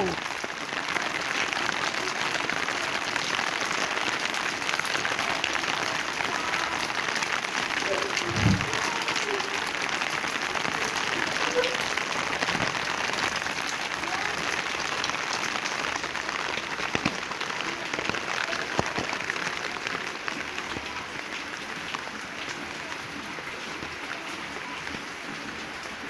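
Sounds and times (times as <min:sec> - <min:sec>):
rain falling on plants: 0:00.0 - 0:26.0.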